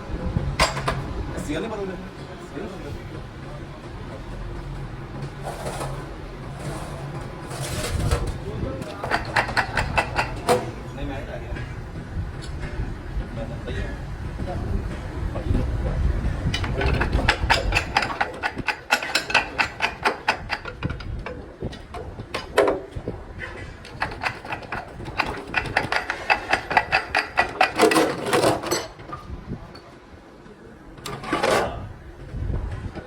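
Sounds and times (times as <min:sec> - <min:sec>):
hand tools clicking on metal: 0:08.8 - 0:10.7, 0:16.5 - 0:22.6, 0:23.8 - 0:29.0.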